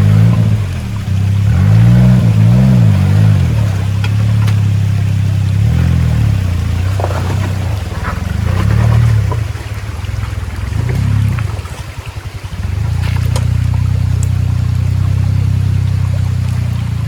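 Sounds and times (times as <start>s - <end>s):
engine revving in blips: 0.0s - 17.0s.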